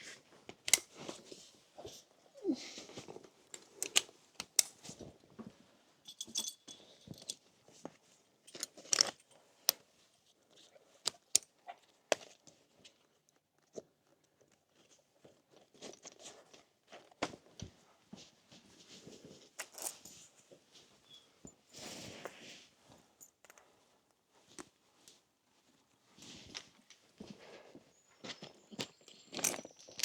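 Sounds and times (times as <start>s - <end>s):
metal harness fittings clinking: 6.0s - 7.4s, 8.5s - 9.2s, 28.8s - 30.0s.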